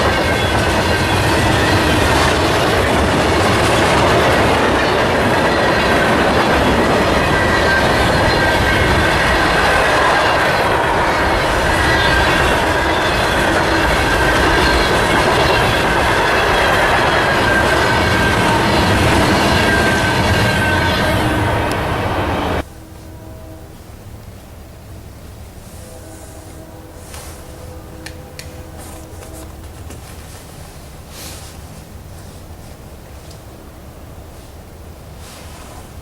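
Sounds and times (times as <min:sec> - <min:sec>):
train wheels clattering on rails: 0:00.0 - 0:22.7, 0:26.0 - 0:33.8
high wheel squeal: 0:00.0 - 0:24.1.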